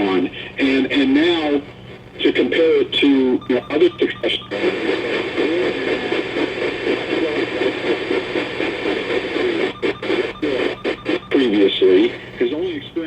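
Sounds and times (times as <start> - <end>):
indistinct wavering voices: 3.4 - 12.2.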